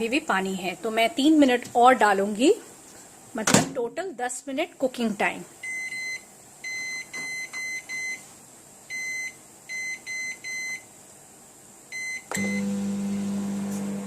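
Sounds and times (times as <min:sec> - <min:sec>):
microwave keypad beeping: 0:11.9 - 0:12.8
microwave oven humming: 0:11.9 - 0:14.0.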